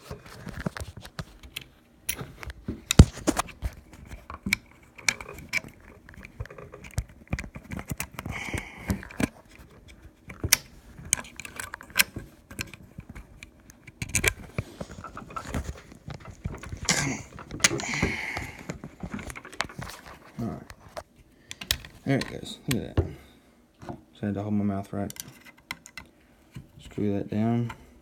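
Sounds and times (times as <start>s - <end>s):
metal parts clicking and scraping: 2.9s - 22.9s.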